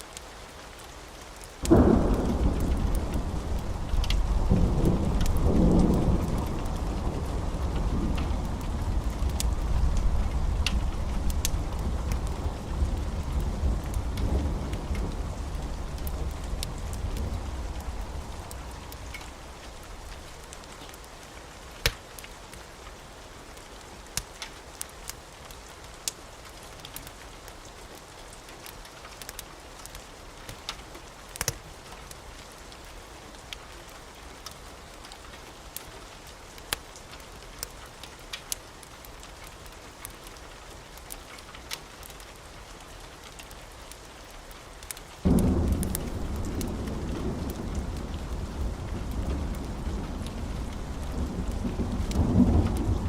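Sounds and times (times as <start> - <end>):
steady rain: 0.0 - 53.0
thunder rumble: 1.6 - 20.6, 45.2 - 53.0.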